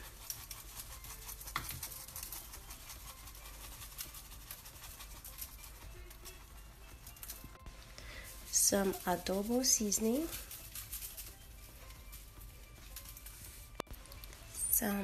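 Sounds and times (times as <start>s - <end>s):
herbs pattering on chicken: 0.0s - 14.5s.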